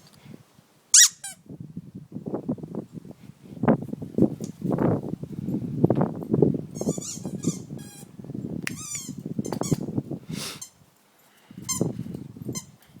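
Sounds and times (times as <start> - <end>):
squeaky toy squeaking: 1.0 - 1.4, 6.8 - 8.1, 8.7 - 9.8.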